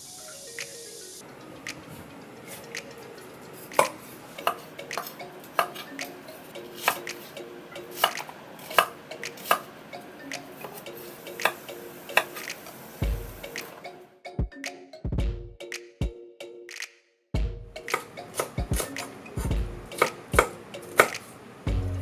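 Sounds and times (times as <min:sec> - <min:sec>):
faint background music: 0:00.0 - 0:15.7, 0:17.4 - 0:22.0
knife chopping on cutting board: 0:03.6 - 0:09.8, 0:10.4 - 0:13.7.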